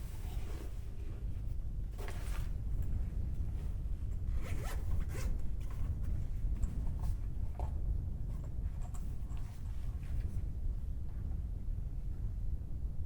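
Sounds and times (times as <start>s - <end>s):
zipper pulled: 4.3s - 5.3s.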